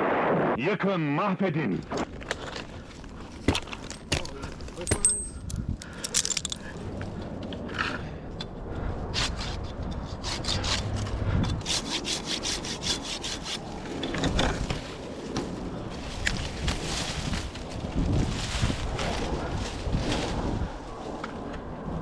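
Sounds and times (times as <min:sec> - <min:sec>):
wood being scraped: 0:09.1 - 0:14.1.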